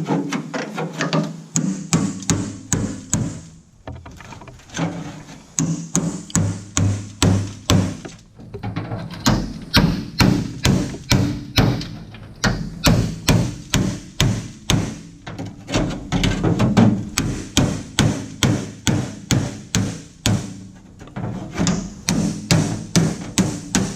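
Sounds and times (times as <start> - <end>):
hammer blows on sheet steel: 1.5 - 3.6, 5.6 - 8.2, 9.2 - 15.4, 16.6 - 23.9.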